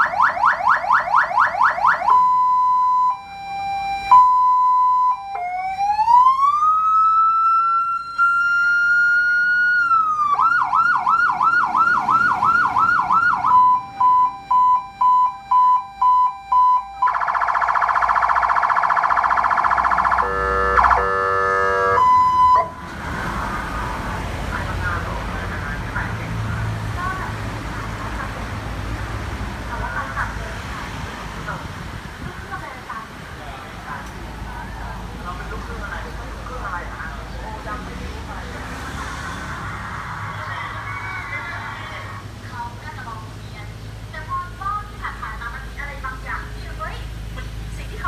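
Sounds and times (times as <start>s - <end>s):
electronic police siren: 0.0s - 22.9s.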